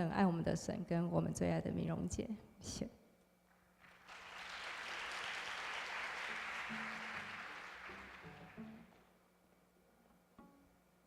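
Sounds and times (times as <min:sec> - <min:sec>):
audience applauding: 0:03.8 - 0:09.0.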